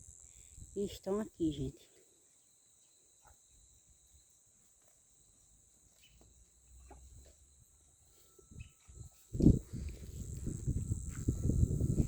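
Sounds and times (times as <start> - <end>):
distant cicada drone: 0.0 - 12.0.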